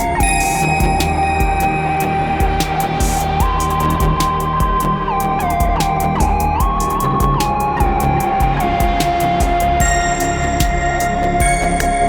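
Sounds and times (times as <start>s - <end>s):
low sustained synth bass: 0.0s - 12.0s
synth lead gliding between notes: 0.0s - 12.0s.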